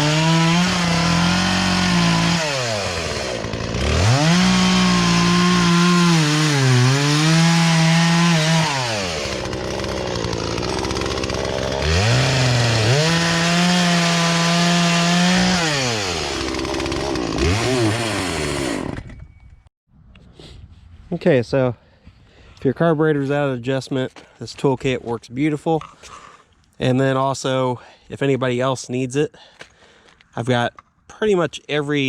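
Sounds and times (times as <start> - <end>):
chainsaw revving: 0.0 - 19.0.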